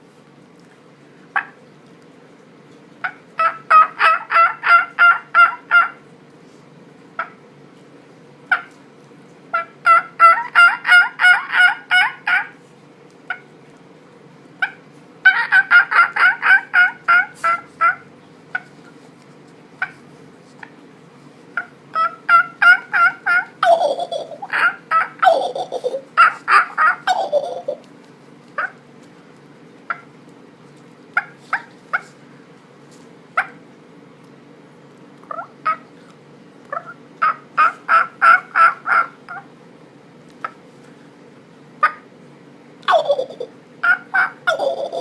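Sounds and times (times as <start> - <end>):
cluck-like vocal notes: 3.0 - 6.0, 9.6 - 12.6, 14.6 - 18.9, 21.6 - 27.9, 35.2 - 36.0, 36.7 - 39.5, 42.8 - 45.0
man imitating turkey yelps: 3.0 - 6.0, 9.6 - 12.6, 14.6 - 18.0, 21.6 - 27.8, 36.7 - 39.5, 42.9 - 45.0.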